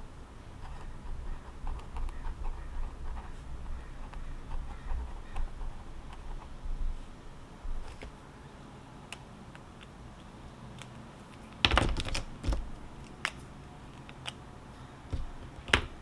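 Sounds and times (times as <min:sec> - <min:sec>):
low outdoor rumble: 0:00.0 - 0:09.1.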